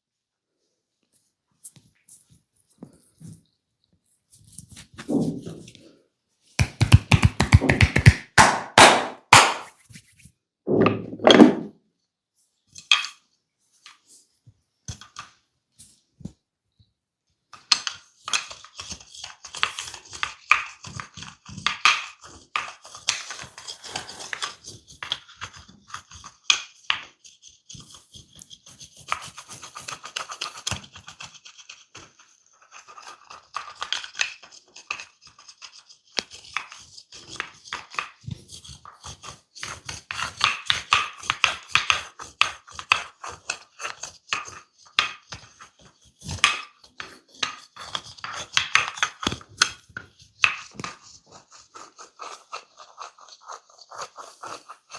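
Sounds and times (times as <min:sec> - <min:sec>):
loud slap: 0:07.6 - 0:09.7.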